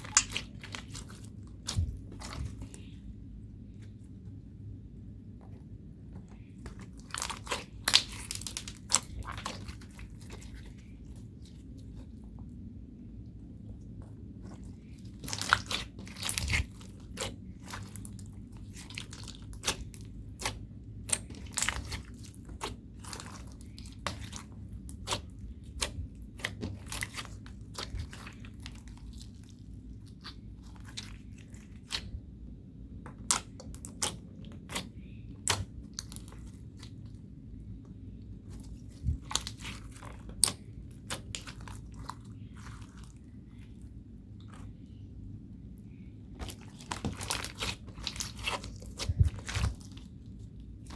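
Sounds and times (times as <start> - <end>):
slime crackling and popping: 0.0 - 2.8, 6.7 - 10.9, 14.8 - 29.4, 33.1 - 36.6, 38.5 - 43.2, 46.4 - 50.2.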